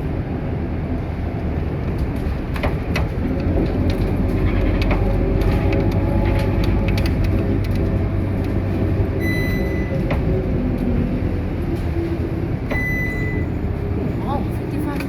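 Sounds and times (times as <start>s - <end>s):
bus diesel engine rumble: 0.0s - 15.0s
short high-pitched beeps: 9.2s - 9.9s, 12.8s - 13.5s.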